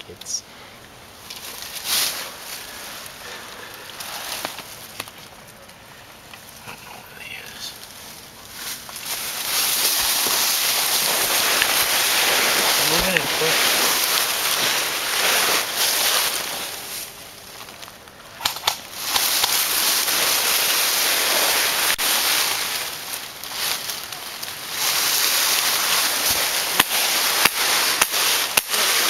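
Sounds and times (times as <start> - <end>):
microphone hiss: 0.0 - 29.0
rustling movement through woodland: 0.2 - 29.0
sharp clicks: 18.4 - 19.6.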